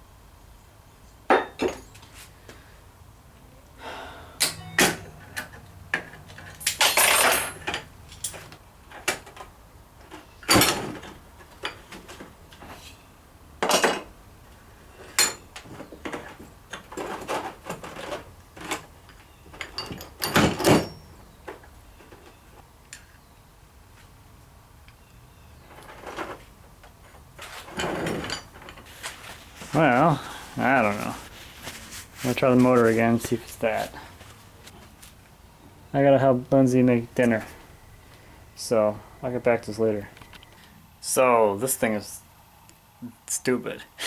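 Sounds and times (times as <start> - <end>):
metal tools clinking and knocking: 4.4 - 8.6, 18.6 - 21.2, 27.4 - 31.3.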